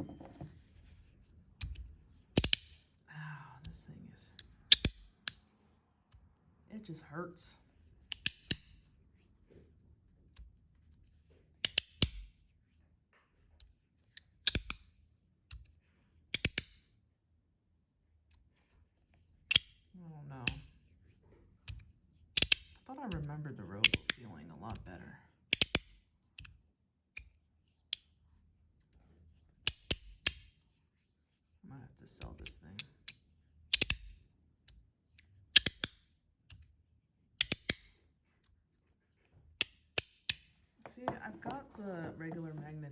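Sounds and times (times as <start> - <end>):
magnetic fidget slider clacks: 22.4 - 24.8, 32.2 - 34.2, 35.5 - 36.7, 37.4 - 38.0.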